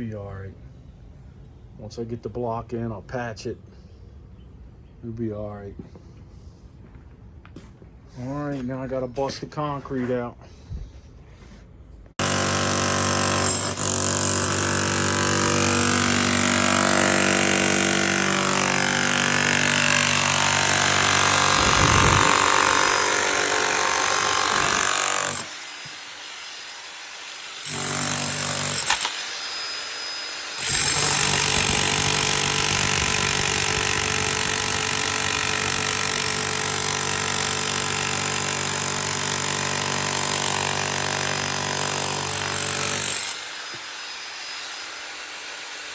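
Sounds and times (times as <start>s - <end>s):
demolition hammer pounding concrete: 12.2s - 26.1s, 27.6s - 29.0s, 30.6s - 43.4s.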